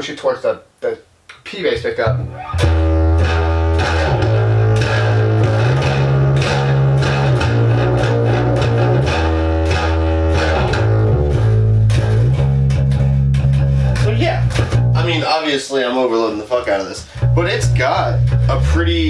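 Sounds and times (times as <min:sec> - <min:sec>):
overdriven electric bass riff: 0:02.0 - 0:15.3, 0:17.1 - 0:19.0.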